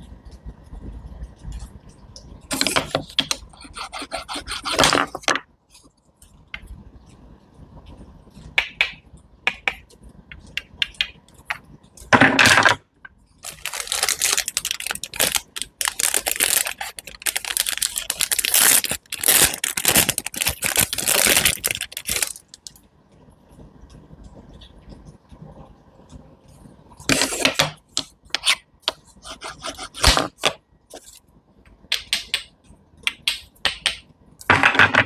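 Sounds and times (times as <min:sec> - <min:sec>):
crunching of crisp food: 0:13.4 - 0:22.7.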